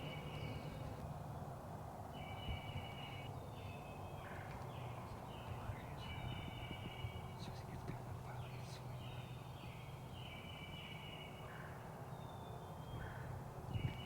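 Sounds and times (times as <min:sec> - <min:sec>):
wind rumble on microphone: 0:04.3 - 0:08.9, 0:12.9 - 0:14.0.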